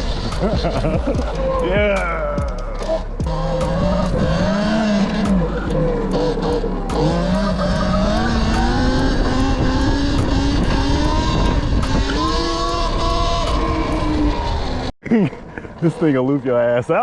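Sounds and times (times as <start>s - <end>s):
electric motor whining: 0.0s - 14.9s
steady riding rumble: 0.0s - 17.0s.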